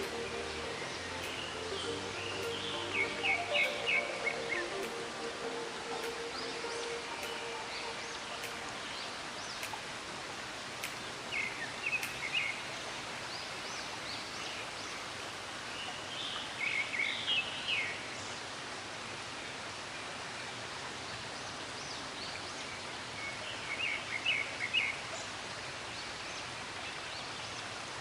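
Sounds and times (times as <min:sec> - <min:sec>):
birds chirping: 0:00.0 - 0:10.0
outdoor background rush: 0:00.0 - 0:17.0.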